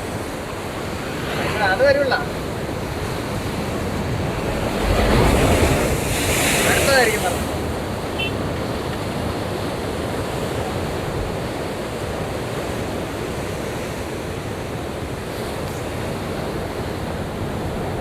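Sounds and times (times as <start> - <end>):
waves breaking: 0.0 - 18.0
wind buffeting microphone: 2.2 - 13.6.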